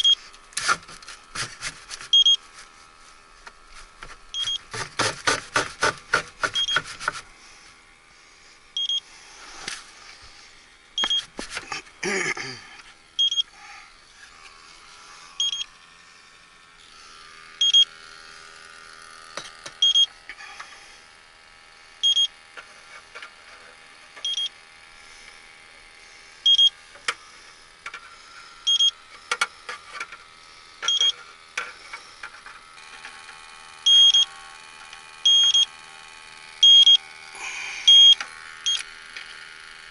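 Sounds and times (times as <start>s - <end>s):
leak detector short high beeps: 2.1s - 2.4s, 4.3s - 4.6s, 6.6s - 6.8s, 8.8s - 9.0s, 11.0s - 11.3s, 13.2s - 13.5s, 15.4s - 15.6s, 17.6s - 17.9s, 19.8s - 20.1s, 22.0s - 22.3s, 24.2s - 24.5s, 26.4s - 26.8s, 28.6s - 29.0s, 35.2s - 35.7s, 36.6s - 37.0s, 37.9s - 38.8s.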